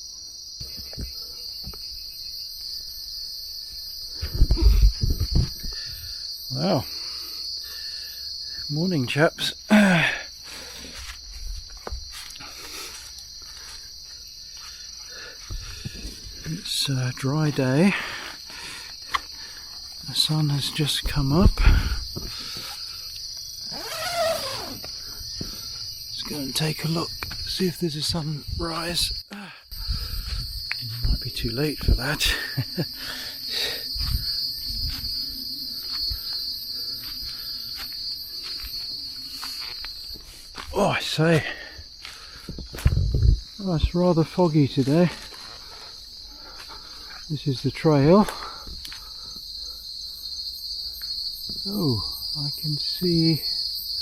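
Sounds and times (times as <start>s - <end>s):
insects chorus: 0.0s - 54.0s
rustling undergrowth: 10.3s - 29.2s, 29.8s - 47.4s
footsteps in undergrowth: 10.5s - 17.6s, 33.7s - 41.1s, 44.3s - 47.3s
knocks and rustles of movement: 10.8s - 14.8s.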